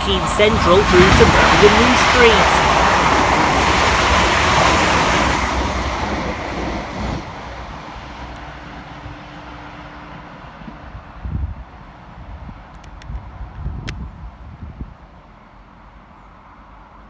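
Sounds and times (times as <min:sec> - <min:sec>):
train passing fast: 0:00.0 - 0:12.5.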